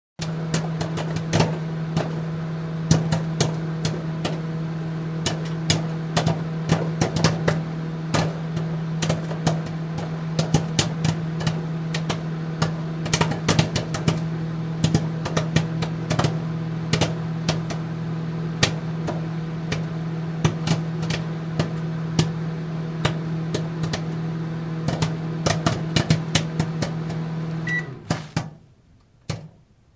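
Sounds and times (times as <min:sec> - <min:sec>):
popcorn popping: 0:00.2 - 0:29.8
microwave oven humming: 0:00.2 - 0:29.9.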